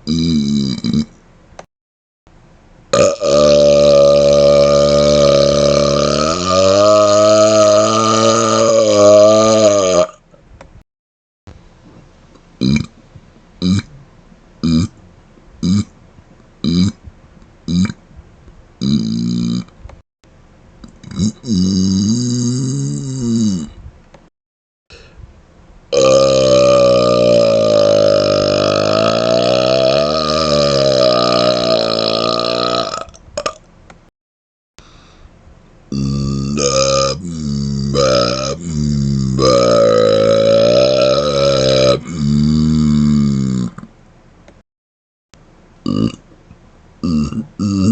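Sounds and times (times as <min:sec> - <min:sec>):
man burping: 0:00.0 - 0:01.2, 0:02.9 - 0:10.3, 0:12.6 - 0:12.9, 0:13.6 - 0:14.0, 0:14.6 - 0:15.0, 0:15.6 - 0:15.9, 0:16.6 - 0:17.0, 0:17.7 - 0:18.0, 0:18.8 - 0:19.8, 0:20.8 - 0:23.8, 0:25.9 - 0:33.6, 0:35.9 - 0:43.9, 0:45.8 - 0:46.2, 0:47.0 - 0:47.9.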